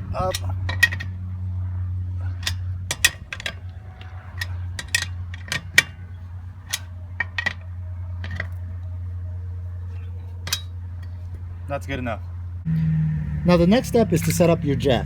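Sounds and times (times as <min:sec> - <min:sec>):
steady low hum: 0:00.0 - 0:15.0
lug wrench metal clicks: 0:00.3 - 0:01.2, 0:02.3 - 0:08.9, 0:09.8 - 0:11.4.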